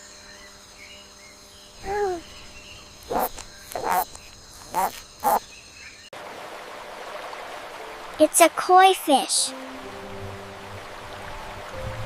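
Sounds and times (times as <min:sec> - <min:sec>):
gecko calling: 0:01.8 - 0:05.5.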